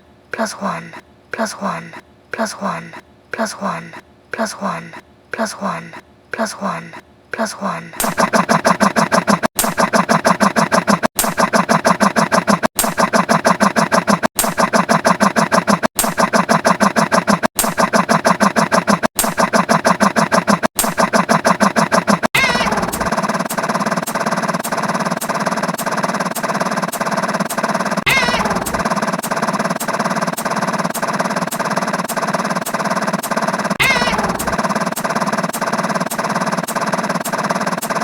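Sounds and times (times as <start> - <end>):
looped sound with regular clicks: 0.4 - 38.0
pulsing buzzing tone: 8.0 - 38.0.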